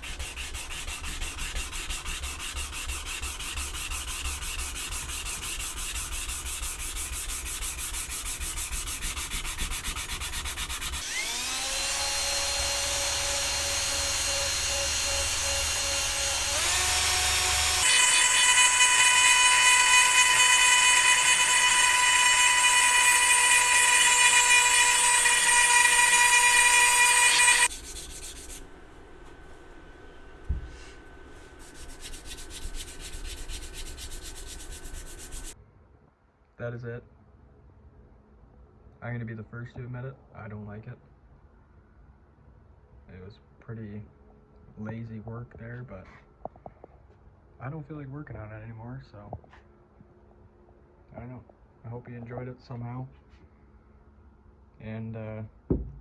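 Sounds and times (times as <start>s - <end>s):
power sander on metal: 0.0s - 35.6s.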